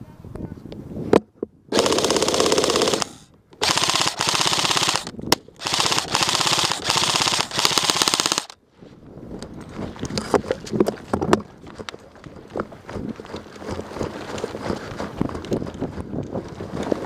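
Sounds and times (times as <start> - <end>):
airsoft rifle firing: 1.7 - 8.6.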